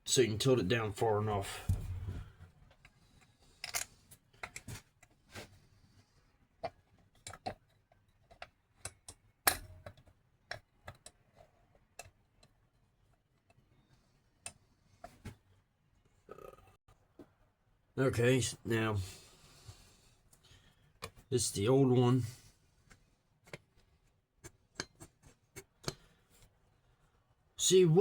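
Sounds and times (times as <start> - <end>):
metal parts clicking and knocking: 3.6 - 4.8.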